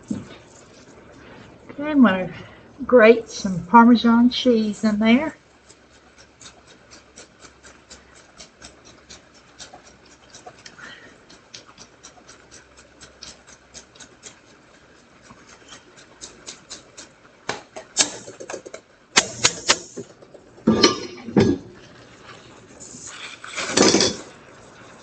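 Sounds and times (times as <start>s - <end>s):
cheese grating on a grater: 5.2s - 20.0s, 22.3s - 25.0s.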